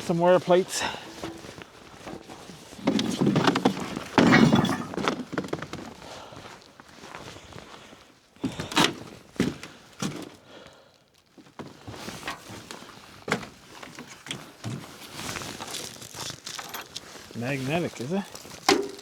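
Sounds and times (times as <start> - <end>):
knocks and thunks of parts handled: 2.1 - 5.6, 18.6 - 19.0.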